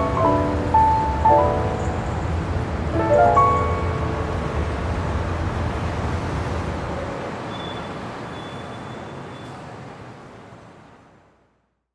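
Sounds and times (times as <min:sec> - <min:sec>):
rumbling road traffic: 0:00.0 - 0:11.3.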